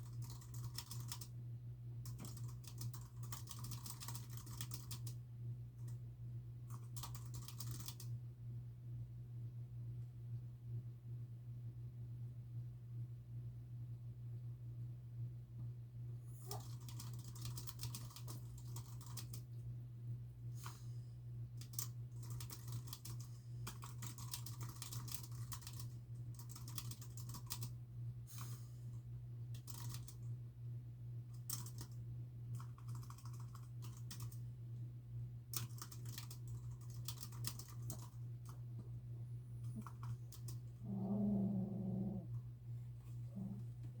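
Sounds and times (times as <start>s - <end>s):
typing on computer keyboard: 0.0s - 1.3s, 2.0s - 5.2s, 6.7s - 8.1s, 16.5s - 19.5s, 21.6s - 27.7s, 29.5s - 30.2s, 31.3s - 34.4s, 35.5s - 38.6s
steady low hum: 0.0s - 44.0s.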